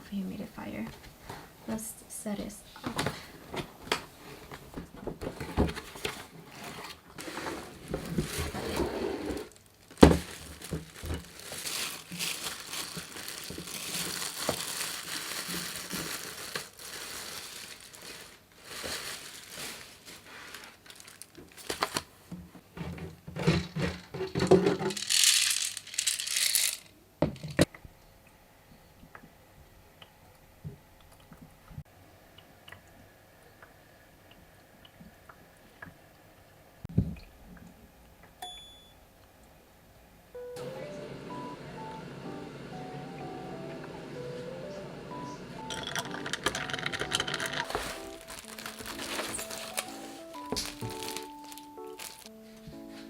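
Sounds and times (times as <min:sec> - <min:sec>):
plastic and paper crinkling: 0:04.3 - 0:22.4, 0:24.6 - 0:26.9, 0:45.6 - 0:53.0.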